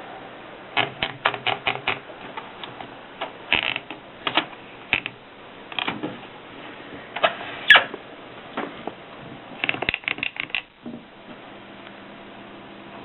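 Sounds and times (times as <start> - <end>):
typewriter keystrokes: 0.8 - 2.0.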